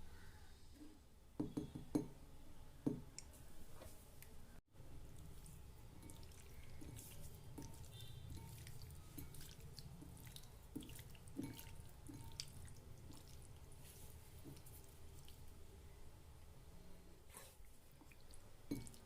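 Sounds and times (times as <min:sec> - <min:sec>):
low steady hum: 0:01.1 - 0:19.0
water dripping: 0:05.0 - 0:15.6, 0:17.9 - 0:19.0
small wet clicks and taps: 0:14.4 - 0:15.4.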